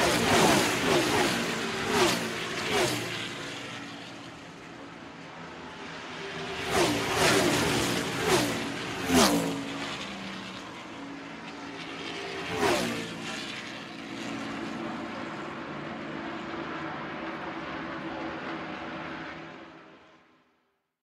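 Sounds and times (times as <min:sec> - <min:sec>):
race cars passing at speed: 0:00.0 - 0:20.4.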